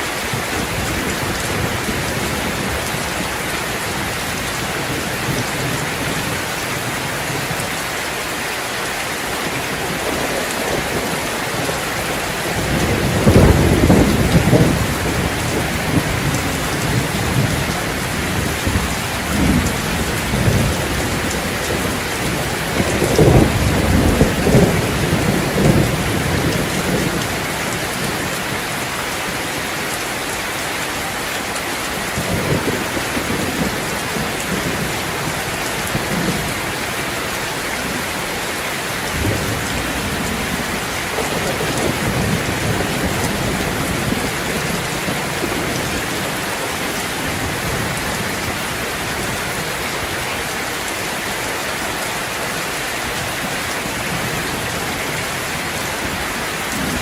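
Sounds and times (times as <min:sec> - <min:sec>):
steady rain: 0:00.0 - 0:57.0
thunder rumbling: 0:09.4 - 0:29.4, 0:38.8 - 0:50.0.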